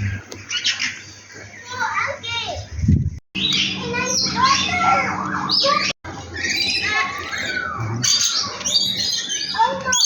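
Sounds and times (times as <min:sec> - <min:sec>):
birds squawking and chirping: 0:00.0 - 0:10.0.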